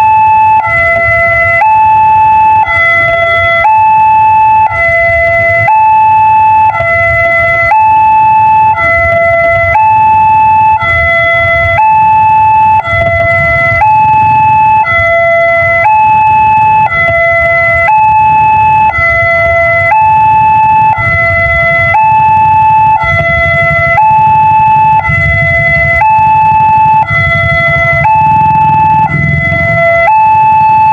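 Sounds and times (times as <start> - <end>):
two-tone warning siren: 0.0 - 30.9
low rumble: 26.3 - 30.9.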